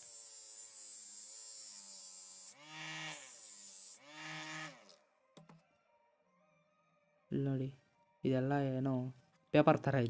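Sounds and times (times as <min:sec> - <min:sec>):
electric motor whine: 0:00.0 - 0:05.0
angle grinder grinding: 0:00.0 - 0:05.1.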